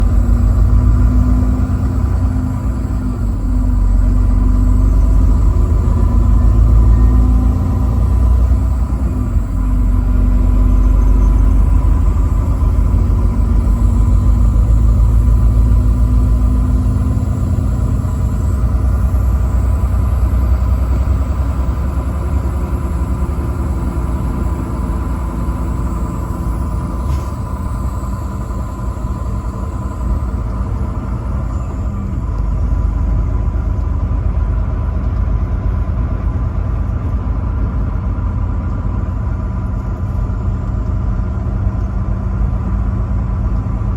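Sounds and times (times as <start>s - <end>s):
truck engine and road rumble: 0.0s - 43.9s.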